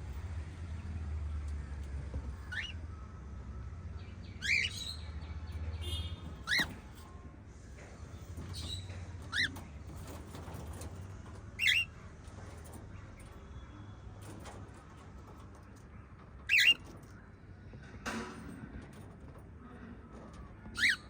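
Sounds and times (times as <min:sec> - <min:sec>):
parrots chirping: 0:02.4 - 0:02.8, 0:04.3 - 0:05.2, 0:05.9 - 0:07.0, 0:11.6 - 0:12.0, 0:16.5 - 0:16.9, 0:20.8 - 0:21.0.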